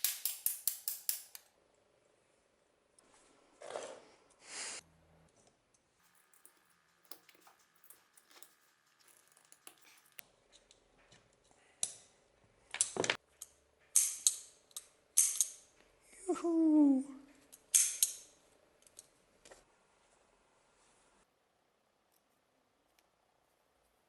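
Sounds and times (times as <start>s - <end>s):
metal parts scraping: 6.0s - 10.2s.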